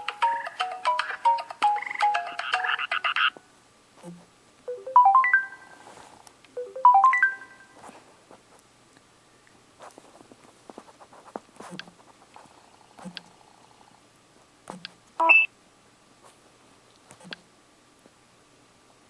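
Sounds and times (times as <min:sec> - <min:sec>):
electronic ringtone melody: 0:00.0 - 0:03.3, 0:04.7 - 0:05.9, 0:06.6 - 0:07.8
rising run of beeps: 0:06.6 - 0:07.8.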